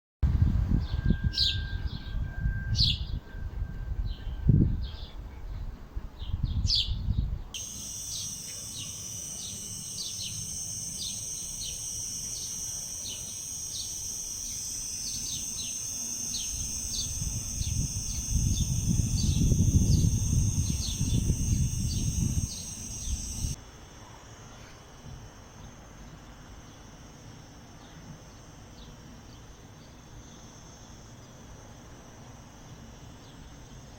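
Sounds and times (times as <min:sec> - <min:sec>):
wind on microphone: 0:00.2 - 0:07.5, 0:16.5 - 0:23.6
small birds chirping: 0:06.2 - 0:23.6
insect drone with chirps: 0:07.5 - 0:33.9.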